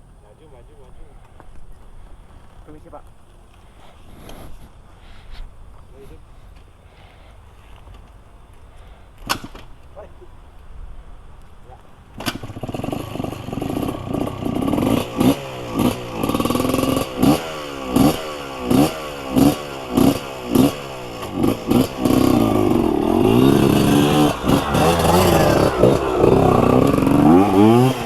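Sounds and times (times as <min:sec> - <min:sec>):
two-stroke dirt bike revving: 0:12.1 - 0:28.0.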